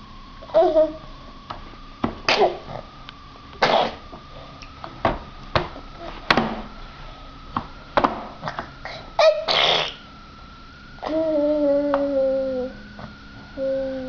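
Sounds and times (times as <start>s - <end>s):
young child vocalizing: 11.0s - 12.8s, 13.6s - 14.0s.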